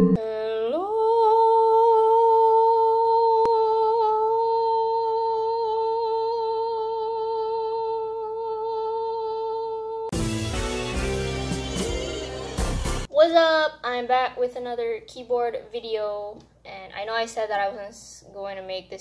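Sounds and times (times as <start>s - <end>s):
person humming a held note: 0.0s - 10.1s.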